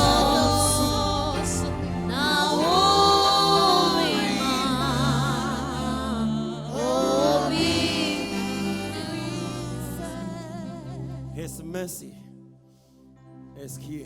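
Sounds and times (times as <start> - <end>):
voice singing with vibrato: 0.0 - 11.5
low musical accompaniment: 0.0 - 14.0.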